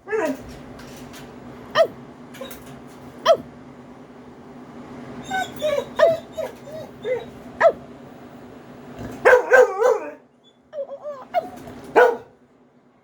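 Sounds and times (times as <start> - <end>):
dog whining and yipping: 1.7 - 2.6, 3.2 - 3.4, 5.2 - 7.8, 9.3 - 12.2
dog barking: 1.8 - 2.0, 3.2 - 3.5, 7.6 - 7.8, 9.2 - 10.2, 11.9 - 12.4.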